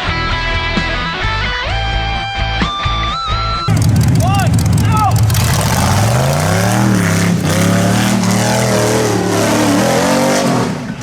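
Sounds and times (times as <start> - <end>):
buggy engine revving: 3.7 - 11.0.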